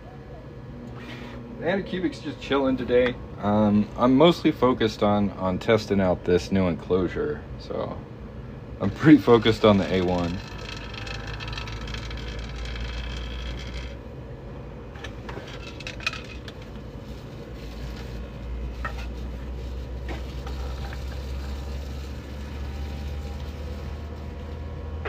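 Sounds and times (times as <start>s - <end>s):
low machine hum: 0.0s - 25.0s
thin high whine: 8.8s - 14.2s.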